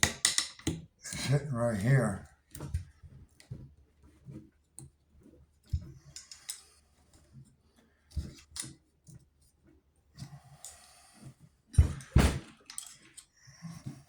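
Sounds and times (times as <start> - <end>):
crossbow parts clicking and knocking: 0.0 - 0.8, 12.6 - 13.3.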